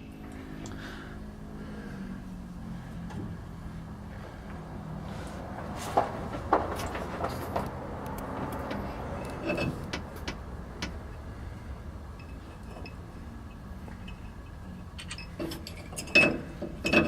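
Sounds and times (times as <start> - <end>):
steady low hum: 0.0 - 17.0
metallic clicks and knocks: 6.0 - 11.1, 12.2 - 17.0.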